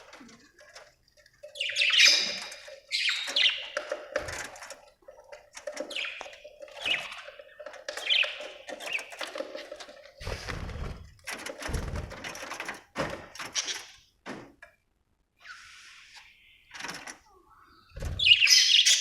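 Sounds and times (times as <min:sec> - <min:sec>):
budgerigars chirping: 0:01.5 - 0:03.8, 0:18.2 - 0:19.0.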